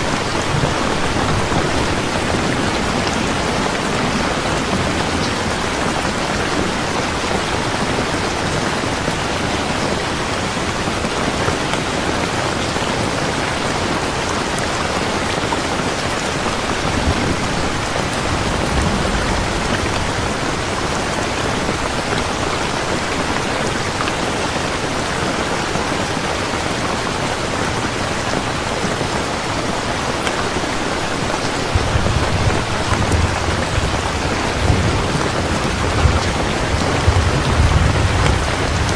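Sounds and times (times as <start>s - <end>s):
low thunder rumbles: 0.0s - 8.6s, 15.9s - 23.9s, 31.2s - 38.9s
heavy rain pouring: 0.0s - 38.9s.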